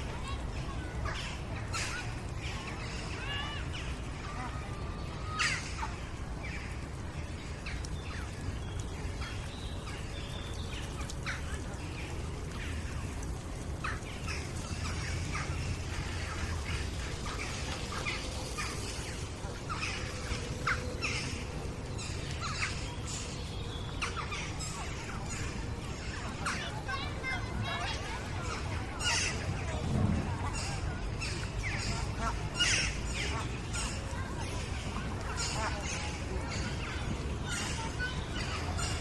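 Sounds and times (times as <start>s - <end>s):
distant children's voices: 0.0s - 39.0s
birds chirping and calling: 13.8s - 39.0s.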